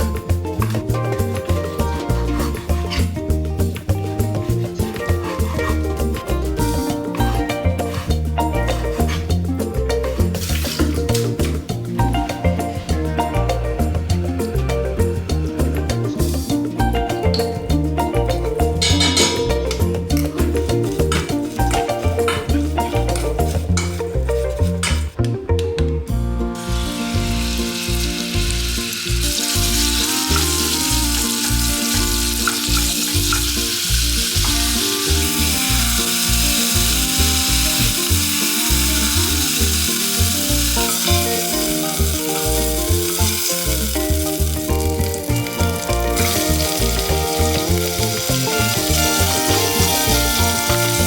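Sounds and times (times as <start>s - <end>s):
background music: 0.0s - 51.0s
food sizzling in a pan: 26.6s - 51.0s.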